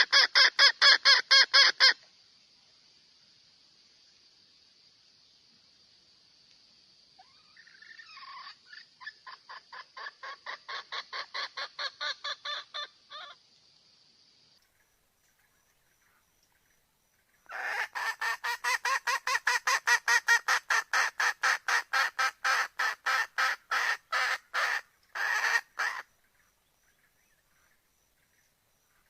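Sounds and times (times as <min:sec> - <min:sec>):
hen clucking: 0:08.4 - 0:13.4, 0:17.5 - 0:26.0.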